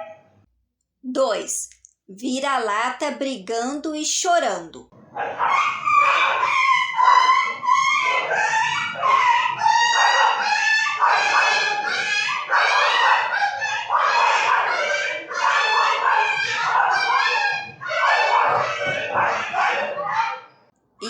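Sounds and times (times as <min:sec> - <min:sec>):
dogs yelping and whining: 0:00.0 - 0:00.4, 0:05.0 - 0:20.7.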